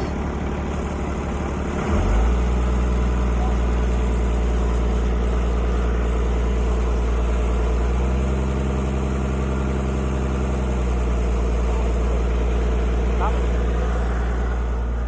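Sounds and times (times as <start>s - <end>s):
tractor engine idling: 0.0s - 15.0s.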